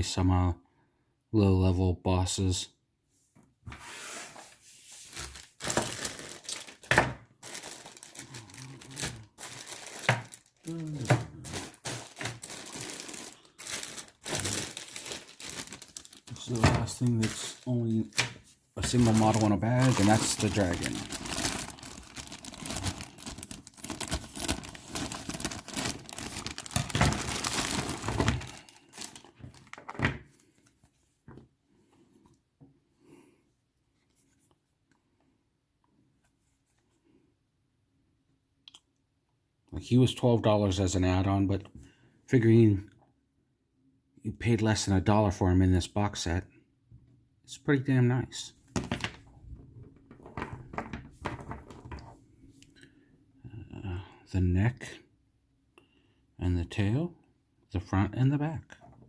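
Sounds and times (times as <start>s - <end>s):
plastic bags crinkling: 5.0s - 30.7s, 48.8s - 49.3s, 50.0s - 52.1s
plastic parts clicking and rustling: 49.9s - 52.1s.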